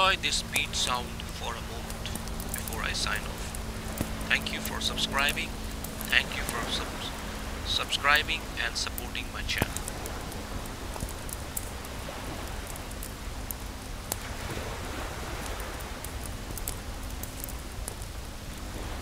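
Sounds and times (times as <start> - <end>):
waves washing over stones: 0.0 - 17.7
bonfire crackling: 0.0 - 19.0.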